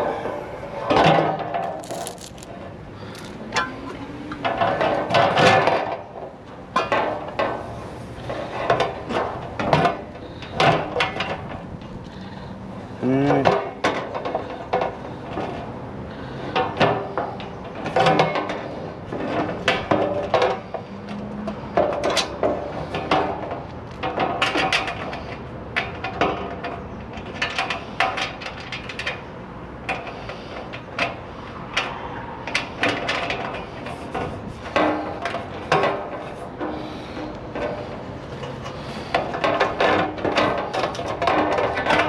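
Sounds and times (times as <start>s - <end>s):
screws being driven: 1.8s - 2.5s, 3.1s - 3.4s.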